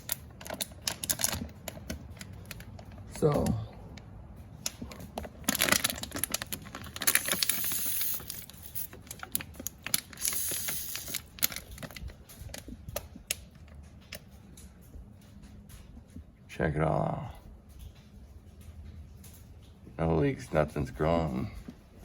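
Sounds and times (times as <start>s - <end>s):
spray bottle hissing: 10.3s - 11.0s.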